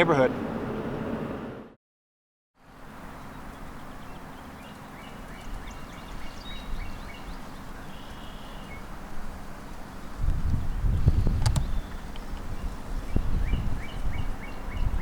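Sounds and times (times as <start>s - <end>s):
birds chirping: 3.0s - 15.0s.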